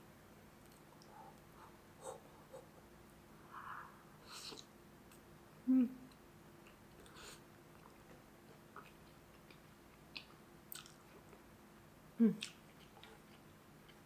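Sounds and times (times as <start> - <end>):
person chewing soft food: 6.6 - 11.5, 12.4 - 14.0.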